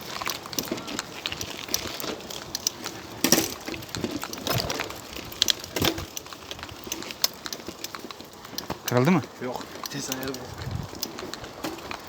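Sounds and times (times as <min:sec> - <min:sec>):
bicycle drivetrain clicking and crunching: 0:00.0 - 0:12.0.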